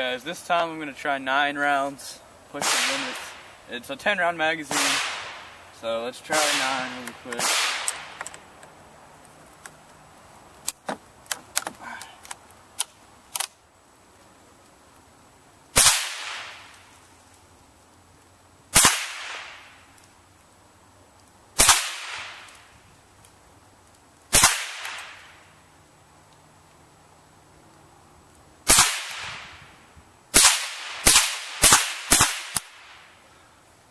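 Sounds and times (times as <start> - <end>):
rifle shots with echo: 2.6 - 3.4, 4.6 - 5.5, 6.3 - 8.2, 15.8 - 16.6, 18.8 - 19.6, 21.6 - 22.5, 24.3 - 25.3, 28.7 - 29.5, 30.4 - 33.0
small clicks: 10.6 - 13.6.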